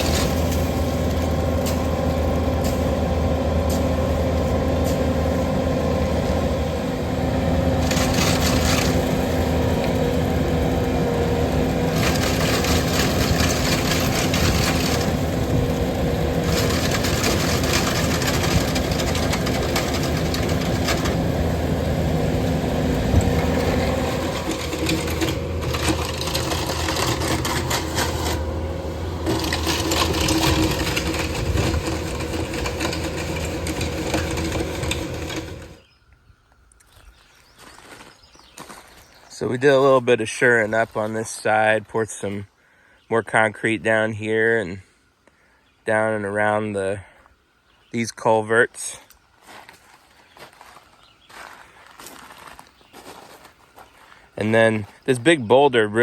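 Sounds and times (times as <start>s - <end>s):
engine running steadily: 0.0s - 35.9s.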